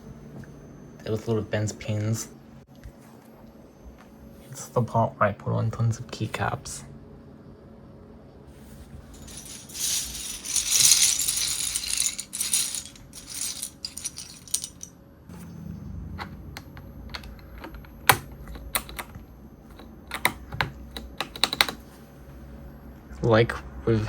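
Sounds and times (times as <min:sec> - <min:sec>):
plastic keycaps clattering: 0:09.1 - 0:14.9.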